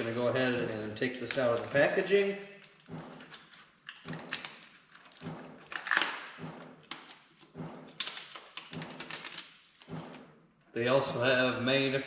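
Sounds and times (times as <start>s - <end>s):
plastic packaging crinkling: 0.0s - 6.3s.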